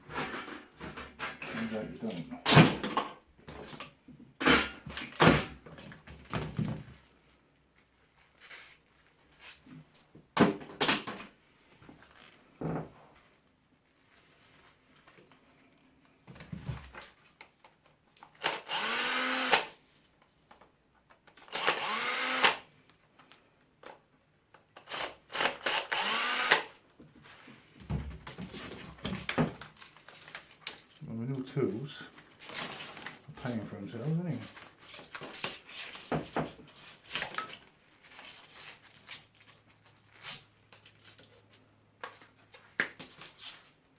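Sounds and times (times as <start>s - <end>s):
power drill spinning: 18.4s - 19.8s, 21.4s - 22.7s, 24.8s - 26.8s.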